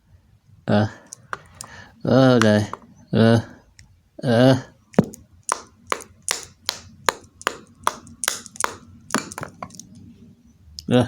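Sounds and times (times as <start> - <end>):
sharp taps on hard object: 5.0 - 9.9.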